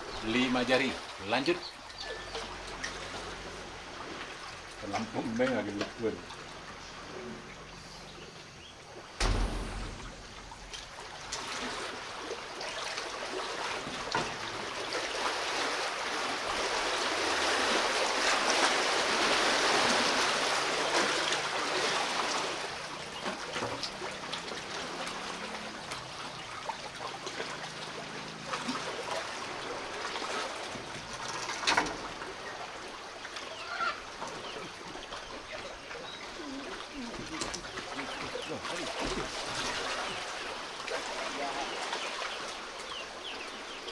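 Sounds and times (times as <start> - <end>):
lake waves splashing on shore: 0.0 - 7.1, 9.2 - 31.4, 32.0 - 43.9
sharp knock: 9.2 - 11.8.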